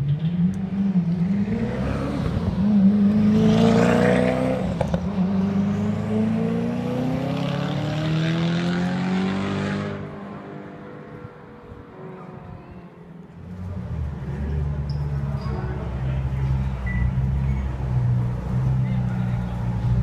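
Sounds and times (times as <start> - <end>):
car engine accelerating hard: 0.0 - 11.0.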